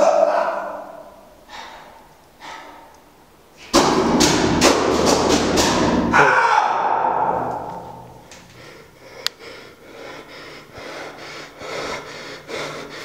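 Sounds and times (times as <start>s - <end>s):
rapid thumps and banging: 3.6s - 6.2s.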